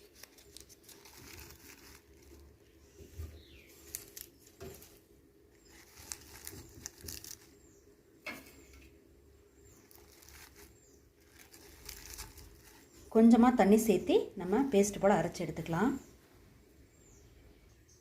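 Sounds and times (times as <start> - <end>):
leaves rustling: 0.0 - 7.8, 9.6 - 15.8.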